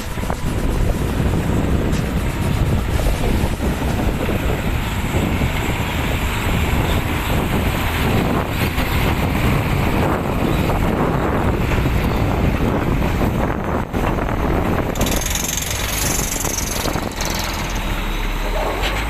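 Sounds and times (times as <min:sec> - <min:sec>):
heavy diesel machinery rumbling: 0:00.0 - 0:19.0
wind buffeting microphone: 0:00.0 - 0:19.0.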